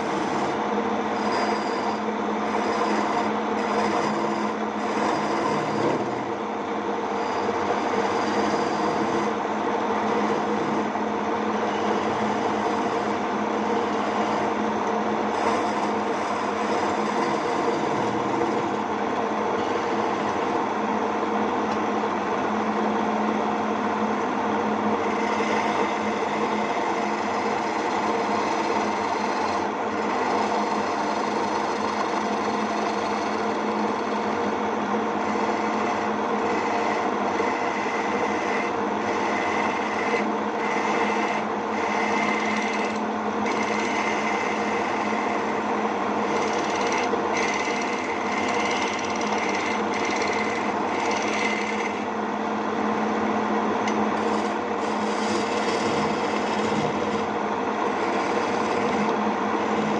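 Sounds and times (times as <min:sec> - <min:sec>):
cutting tool scraping wood: 0:00.0 - 0:00.6, 0:01.2 - 0:06.4, 0:07.1 - 0:09.4, 0:10.0 - 0:10.9, 0:15.3 - 0:18.9, 0:25.0 - 0:34.6, 0:35.2 - 0:52.1, 0:53.9 - 0:59.9
lathe motor humming: 0:00.0 - 0:59.9.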